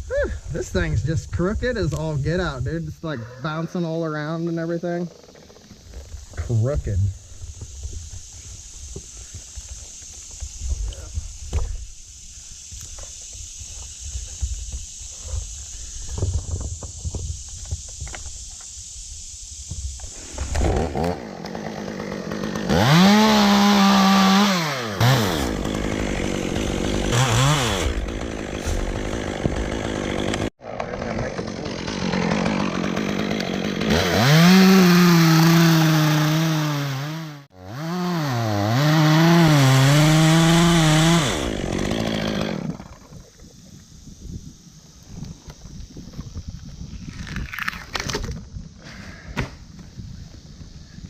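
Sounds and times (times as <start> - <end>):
chainsaw revving and cutting: 20.1 - 43.1.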